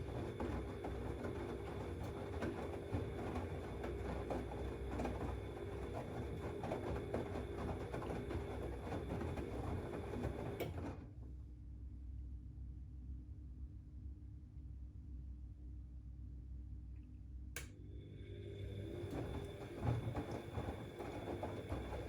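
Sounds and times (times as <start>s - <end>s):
washing machine motor humming: 17.9s - 22.0s.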